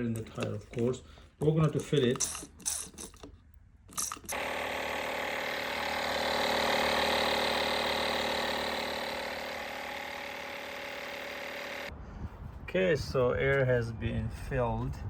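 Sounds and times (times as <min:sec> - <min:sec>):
air compressor motor hum: 0:04.3 - 0:11.9.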